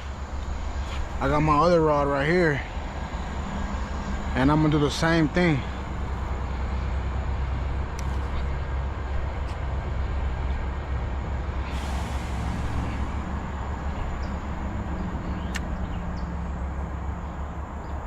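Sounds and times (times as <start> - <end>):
steady low rumbling: 0.0 - 18.0
faint clicks: 15.4 - 16.0.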